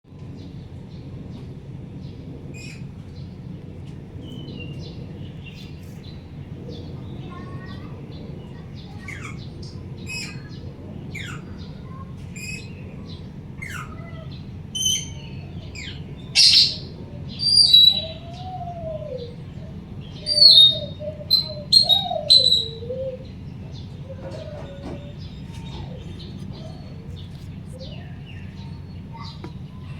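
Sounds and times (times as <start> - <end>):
steady low hum: 0.2 - 29.9
songbird whistling calls: 14.8 - 29.5.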